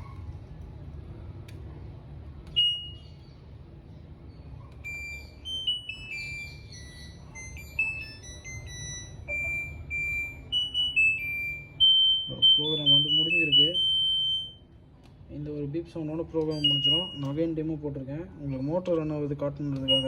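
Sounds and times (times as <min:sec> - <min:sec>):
steady low hum: 0:00.0 - 0:18.6
washing machine beeping tune: 0:02.5 - 0:03.2, 0:04.8 - 0:14.7, 0:16.5 - 0:17.6, 0:19.8 - 0:20.0.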